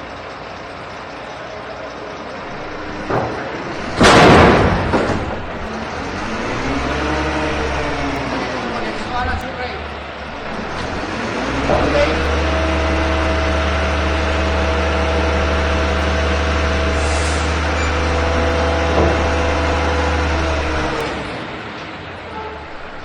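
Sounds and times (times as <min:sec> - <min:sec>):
engine whine: 0:00.0 - 0:23.0
heavy truck engine humming: 0:00.0 - 0:23.0
air hiss: 0:16.8 - 0:18.1.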